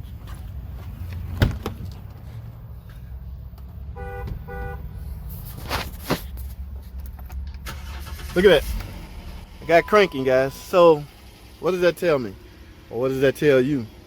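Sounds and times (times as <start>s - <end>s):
starter cranking engine: 7.6s - 9.9s.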